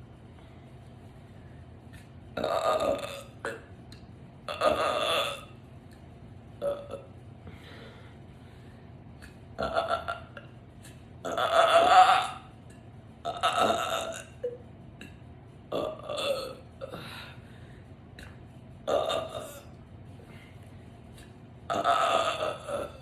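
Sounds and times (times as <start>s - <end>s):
woman burping loudly: 2.4s - 3.7s, 4.5s - 5.5s, 6.6s - 7.1s, 9.6s - 10.5s, 11.2s - 12.5s, 13.3s - 14.5s, 15.7s - 17.0s, 18.9s - 19.6s, 21.7s - 23.0s.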